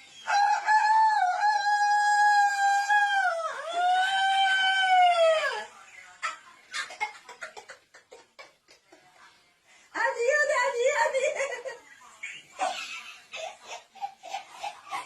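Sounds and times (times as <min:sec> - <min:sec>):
rooster crowing: 0:00.2 - 0:03.0.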